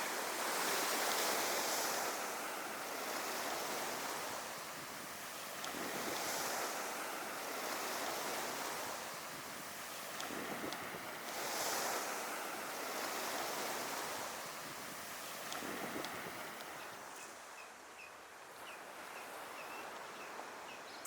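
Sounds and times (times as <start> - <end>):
sea waves washing on beach: 0.0 - 17.6
wind on microphone: 2.9 - 17.0.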